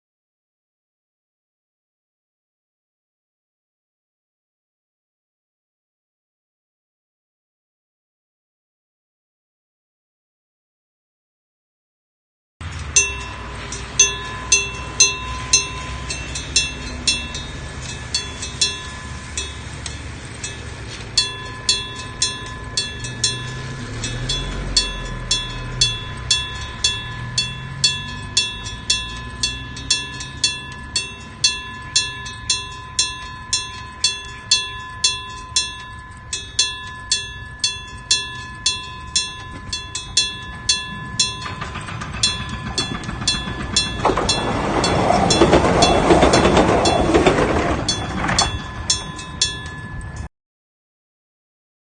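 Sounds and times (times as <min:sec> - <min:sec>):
level crossing bell ringing: 0:12.6 - 0:50.3
train rumbling past: 0:12.6 - 0:50.3.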